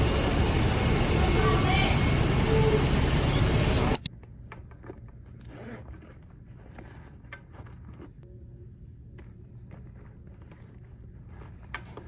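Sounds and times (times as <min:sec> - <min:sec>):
loud traffic noise: 0:00.0 - 0:04.1
close-up handling clicks and scrapes: 0:03.9 - 0:08.3, 0:09.1 - 0:12.0.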